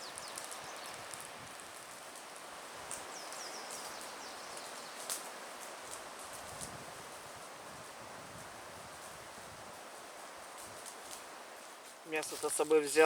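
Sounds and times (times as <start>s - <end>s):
campfire sharp pops: 0.0s - 7.2s, 10.2s - 12.8s
campfire crackling: 0.0s - 13.0s
steady hiss: 0.0s - 13.0s.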